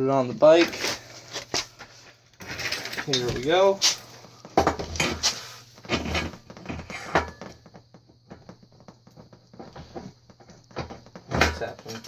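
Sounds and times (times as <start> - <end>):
metal bike parts knocking: 4.5 - 5.2.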